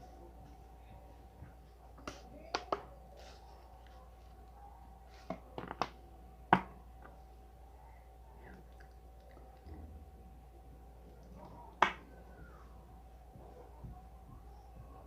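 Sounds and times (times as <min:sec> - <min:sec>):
objects tapping and clicking: 0:05.3 - 0:07.2.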